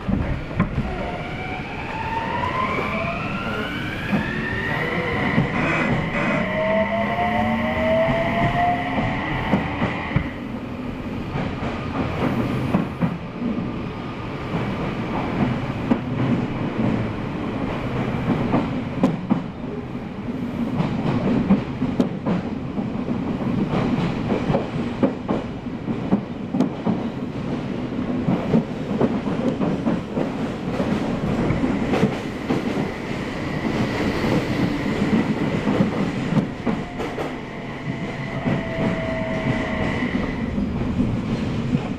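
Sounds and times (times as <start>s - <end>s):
train wheels rolling rumble: 0.0s - 41.9s.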